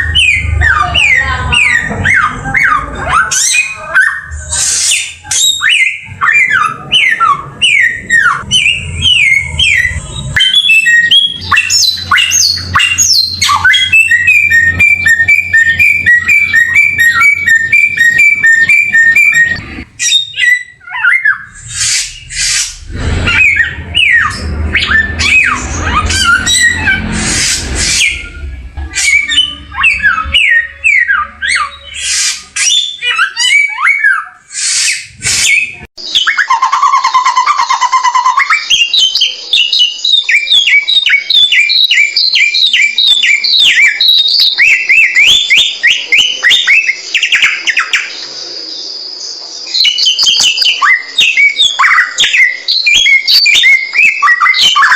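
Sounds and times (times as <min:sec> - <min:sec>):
songbird chirps and whistles: 0:00.0 - 0:54.9
repeated short rising notes: 0:21.4 - 0:32.0.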